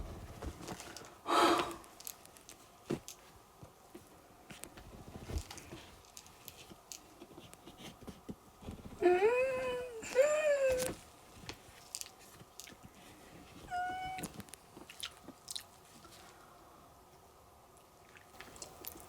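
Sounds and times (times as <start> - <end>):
person humming: 9.0 - 11.0
chewing and wet mouth clicks: 14.9 - 15.7, 18.1 - 19.0.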